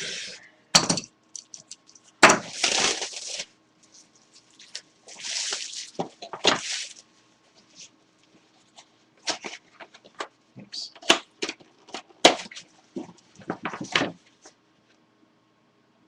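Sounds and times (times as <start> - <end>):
crinkly packaging rustling: 1.9 - 7.0, 11.8 - 14.5.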